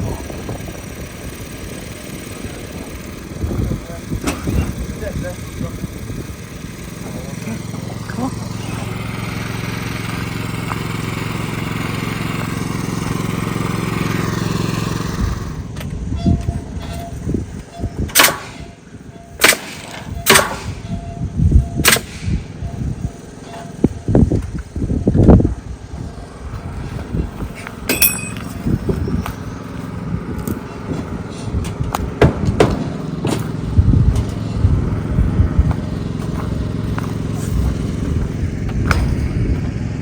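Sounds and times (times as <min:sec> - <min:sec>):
motor running: 0:00.0 - 0:18.1, 0:18.7 - 0:40.0
loud bangs on metal: 0:32.2 - 0:33.4.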